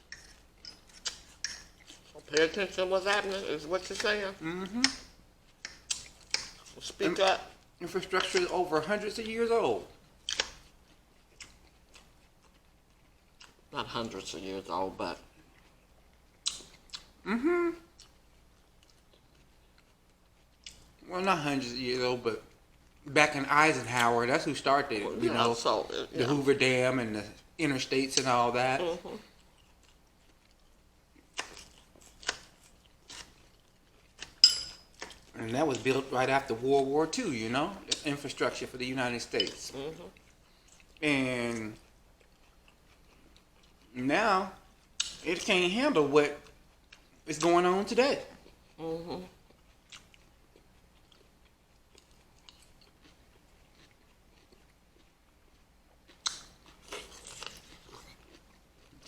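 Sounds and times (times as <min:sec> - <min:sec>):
food crunching: 0:00.0 - 0:59.0
utensil clinking on plate: 0:34.4 - 0:34.9.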